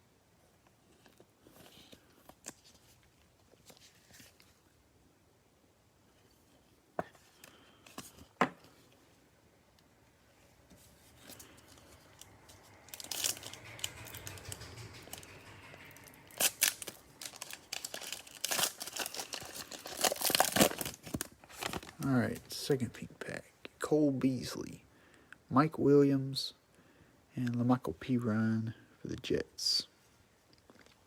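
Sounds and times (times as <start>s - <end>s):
wrapper tearing and crinkling: 12.9s - 22.0s.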